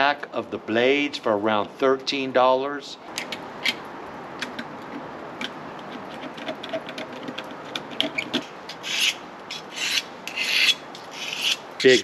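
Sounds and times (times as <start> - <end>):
knife scraping stroke: 9.0 - 11.6.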